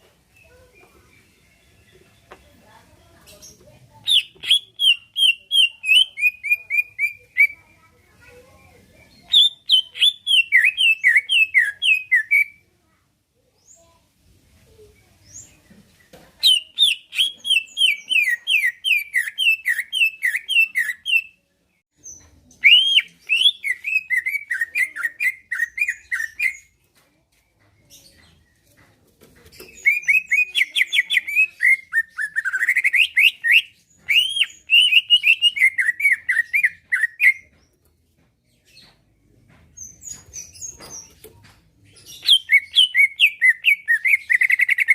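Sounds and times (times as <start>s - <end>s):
bird singing fast chirps: 4.0s - 7.6s, 9.1s - 12.6s, 16.4s - 21.3s, 22.1s - 26.7s, 29.6s - 37.5s, 42.0s - 44.9s.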